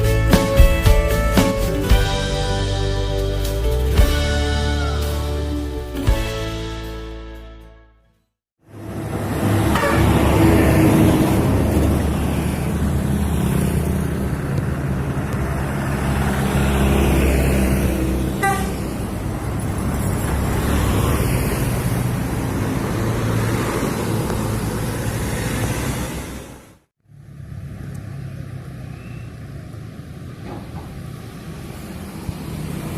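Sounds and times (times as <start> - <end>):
bus diesel engine running: 8.6 - 32.9
multi-tone bus horn: 9.3 - 11.2, 18.3 - 19.1.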